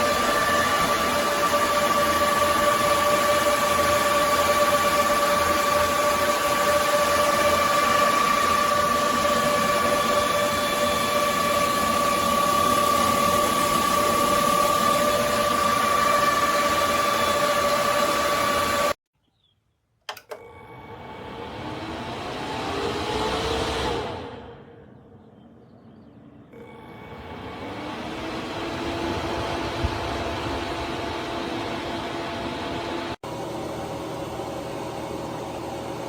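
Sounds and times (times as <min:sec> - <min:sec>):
case fan running: 0:00.0 - 0:19.0, 0:26.6 - 0:36.0.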